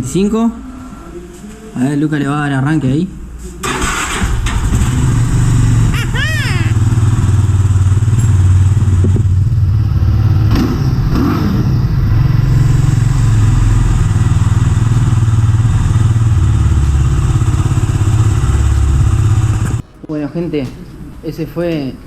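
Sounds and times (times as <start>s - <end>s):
motorcycle engine running: 4.2s - 19.8s
engine knock: 6.8s - 19.8s.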